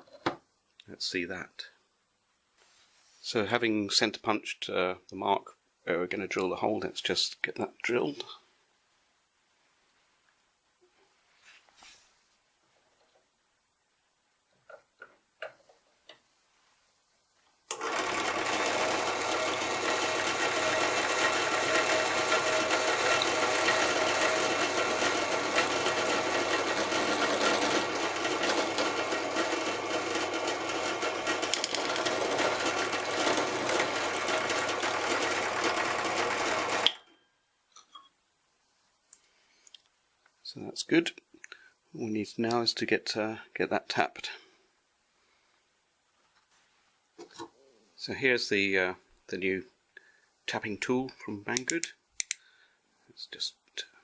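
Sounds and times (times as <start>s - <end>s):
electric drill drilling metal: 17.7s - 36.9s.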